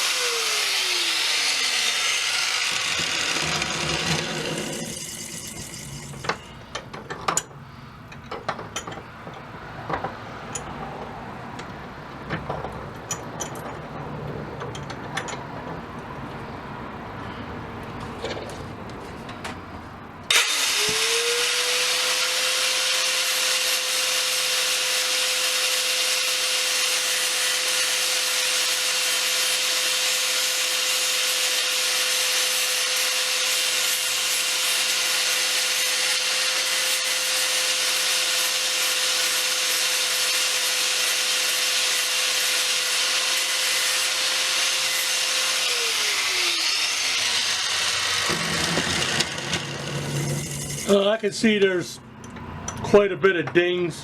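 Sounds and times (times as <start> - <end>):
power grinder grinding metal: 0.0 - 6.7, 20.3 - 51.0
handling clicks and knocks: 6.2 - 13.9.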